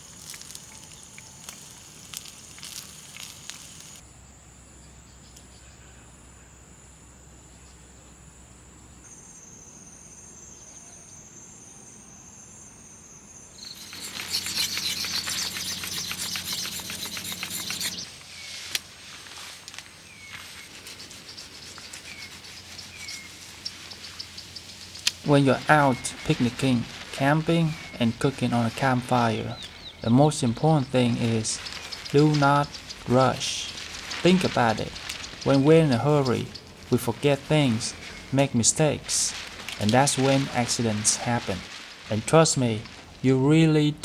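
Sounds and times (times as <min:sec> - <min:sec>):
dense crackling: 0:00.0 - 0:04.0, 0:13.6 - 0:18.2, 0:19.7 - 0:44.0
insects trilling: 0:00.0 - 0:43.8.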